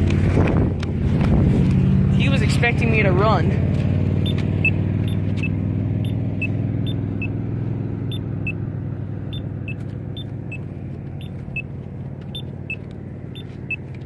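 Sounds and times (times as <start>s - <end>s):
vehicle engine rumbling: 0.0s - 14.0s
pedestrian signal beeps: 4.2s - 7.3s, 8.1s - 8.6s, 9.3s - 10.6s, 11.2s - 11.7s, 12.3s - 13.9s.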